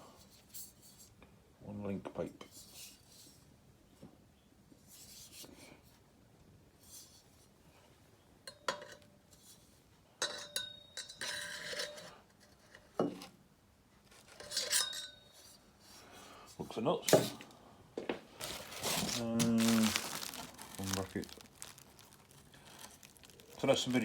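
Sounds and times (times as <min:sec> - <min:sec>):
faint metallic rings: 0:10.2 - 0:12.0, 0:14.5 - 0:15.6
packaging rustling: 0:18.3 - 0:24.0.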